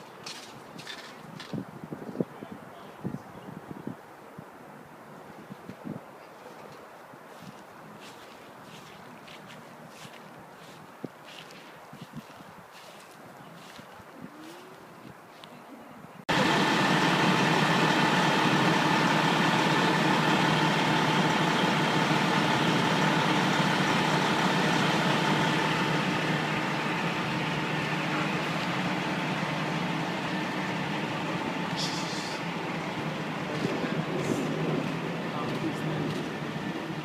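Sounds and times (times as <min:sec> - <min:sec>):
vehicle engine idling: 0:16.3 - 0:37.0.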